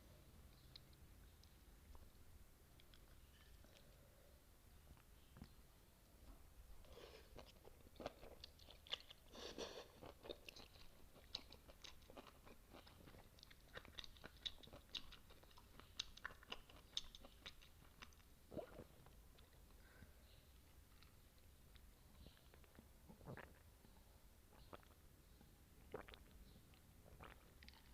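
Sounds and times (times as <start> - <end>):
mouth clicks and crunches: 0.5 - 4.0, 7.3 - 19.8, 20.8 - 25.0, 25.8 - 27.9
wet chewing: 7.2 - 19.8, 25.9 - 27.9.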